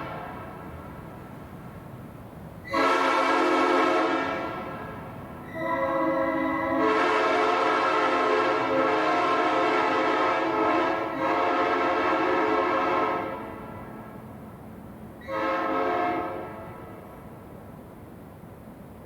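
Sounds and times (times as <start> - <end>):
train horn chord blasts: 2.7 - 14.2, 15.2 - 17.1.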